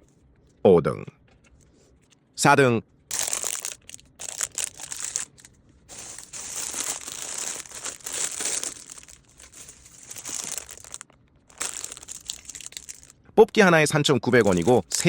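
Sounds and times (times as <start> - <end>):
packaging crinkling and rustling: 3.1 - 13.1, 14.3 - 15.0.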